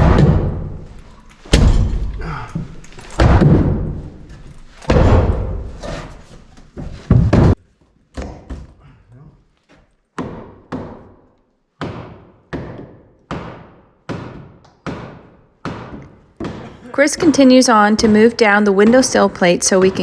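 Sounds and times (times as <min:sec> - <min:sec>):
hammer striking wood: 0:10.2 - 0:16.7.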